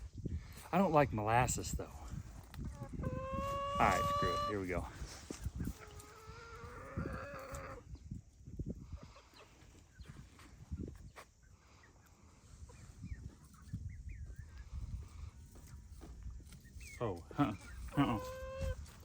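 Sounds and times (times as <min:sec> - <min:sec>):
farm animal wavering call: 0:03.0 - 0:04.7, 0:17.6 - 0:18.9.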